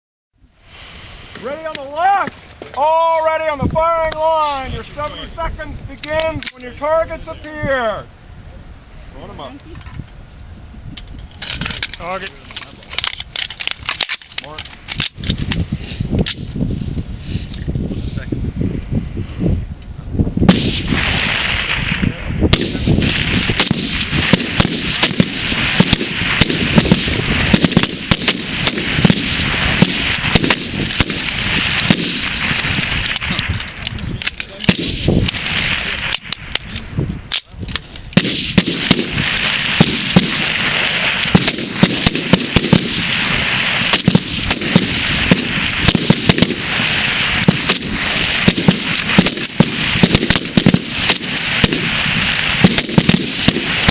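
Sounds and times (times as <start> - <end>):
rifle shots: 20.5 - 37.4, 38.1 - 53.9.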